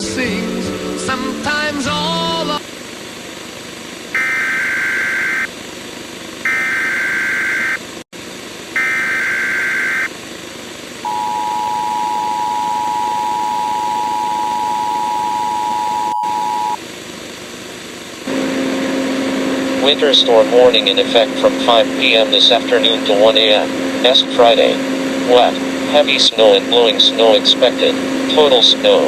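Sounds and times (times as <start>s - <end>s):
buzzy data bursts: 4.2s - 5.5s, 6.4s - 7.8s, 8.8s - 10.1s
two-tone attention signal: 4.2s - 5.5s, 6.5s - 7.8s, 8.8s - 10.1s, 11.1s - 16.8s.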